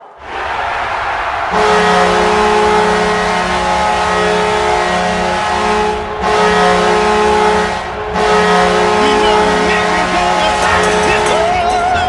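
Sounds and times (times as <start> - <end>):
goal horn blasting: 1.5 - 12.0.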